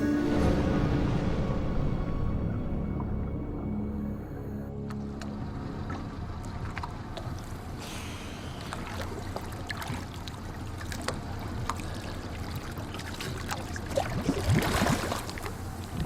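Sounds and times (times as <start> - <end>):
gurgling bubbling water: 4.9 - 16.0
water sloshing: 8.4 - 16.0.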